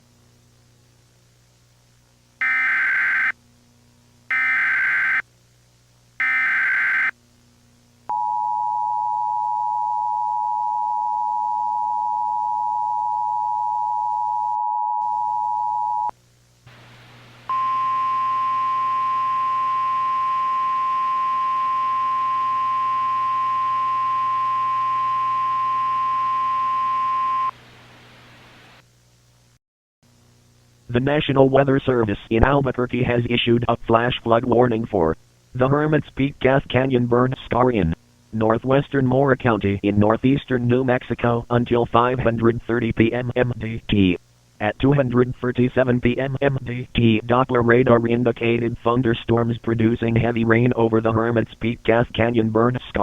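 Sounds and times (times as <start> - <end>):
buzzing digital data bursts: 2.4 - 3.4, 4.3 - 5.2, 6.2 - 7.1
single-tone warning alarm: 2.4 - 3.4, 4.3 - 5.2, 6.2 - 7.1, 17.5 - 27.5.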